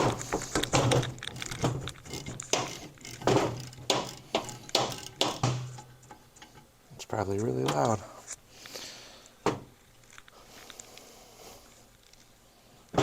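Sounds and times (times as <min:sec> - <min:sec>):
metallic knocks of hand tools: 0:02.5 - 0:05.9.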